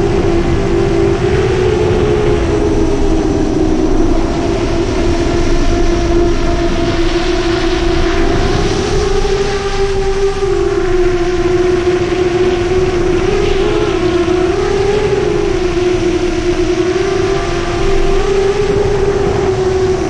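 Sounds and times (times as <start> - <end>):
drone motors whining: 0.0 - 20.0.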